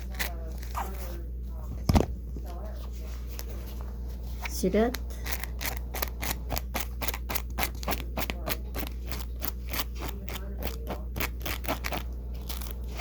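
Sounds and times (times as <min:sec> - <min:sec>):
seam ripper scraping velcro: 0:05.3 - 0:13.0.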